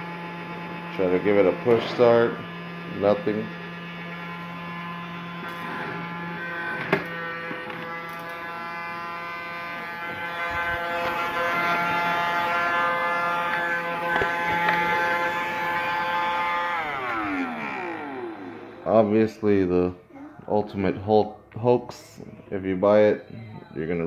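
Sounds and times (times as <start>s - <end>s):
toy vacuum motor whining: 0.3s - 19.1s.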